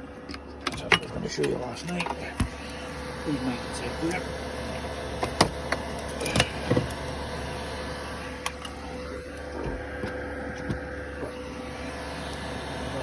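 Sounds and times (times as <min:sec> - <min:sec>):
heater blower humming: 0:00.0 - 0:13.0.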